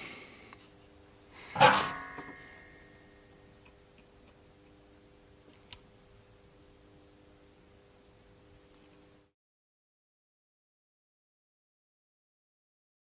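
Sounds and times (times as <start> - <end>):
low steady hum: 0.0 - 9.3.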